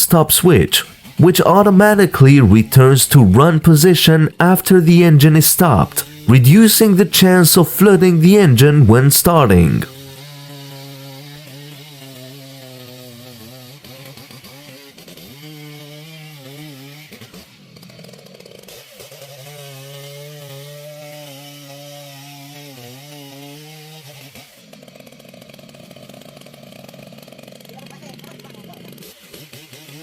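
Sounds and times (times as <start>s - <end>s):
chainsaw engine revving: 6.0s - 6.3s, 9.9s - 30.0s.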